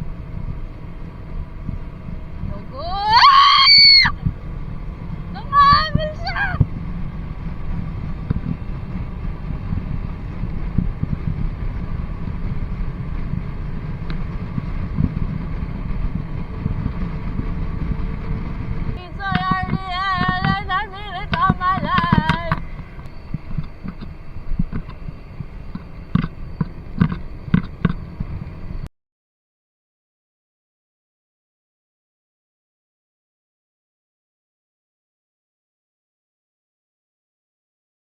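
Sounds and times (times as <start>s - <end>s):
motorcycle engine rumble: 0.0s - 28.9s
wind on microphone: 3.9s - 28.9s
high wavering voice-like tone: 19.0s - 22.7s.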